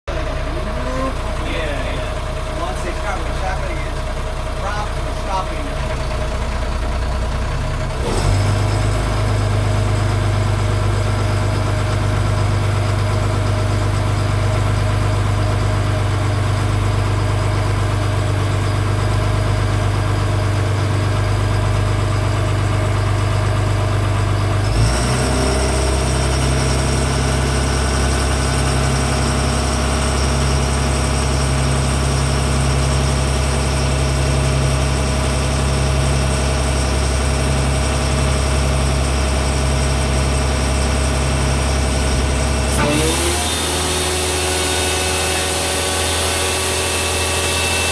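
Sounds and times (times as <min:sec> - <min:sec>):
boat engines running: 0:00.1 - 0:12.3.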